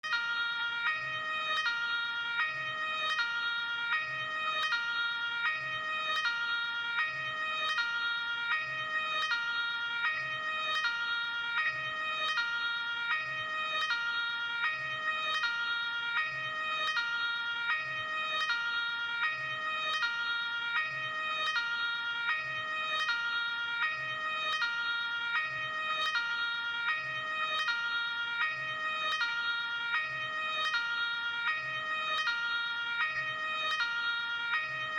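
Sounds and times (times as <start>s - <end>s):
ambulance two-tone siren: 0.0s - 34.9s.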